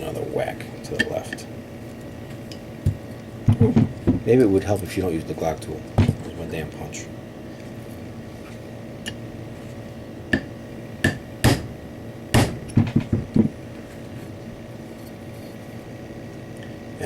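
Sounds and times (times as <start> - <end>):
hammer striking metal punch: 10.4 - 11.8, 12.4 - 12.6.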